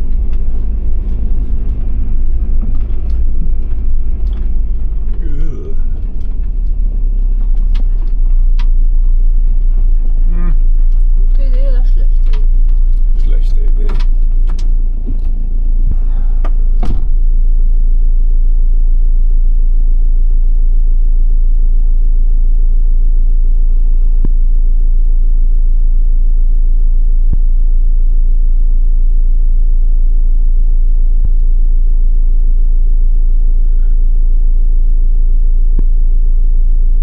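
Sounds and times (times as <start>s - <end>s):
car driving on rough track: 0.0s - 17.7s.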